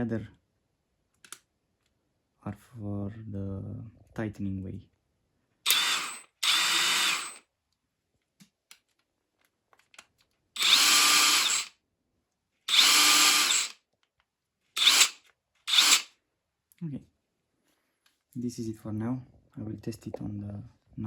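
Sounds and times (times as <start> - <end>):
impact wrench motor whine: 5.7 - 7.4, 10.6 - 11.7, 12.7 - 13.8, 14.8 - 16.1.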